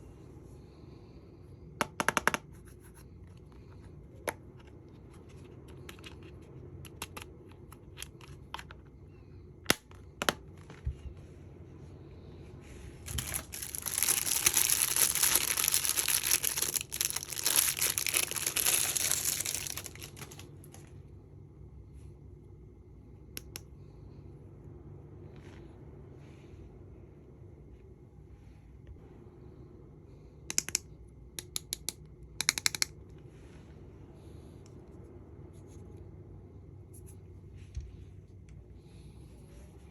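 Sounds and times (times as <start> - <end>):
clicks and taps: 1.8 - 2.5
packaging wrap crinkling and tearing: 13.1 - 20.9.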